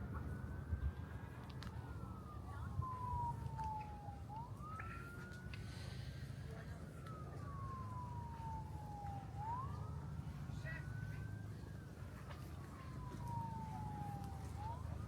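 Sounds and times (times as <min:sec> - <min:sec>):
low traffic rumble: 0:00.0 - 0:15.0
siren wailing: 0:02.0 - 0:05.6, 0:07.0 - 0:15.0.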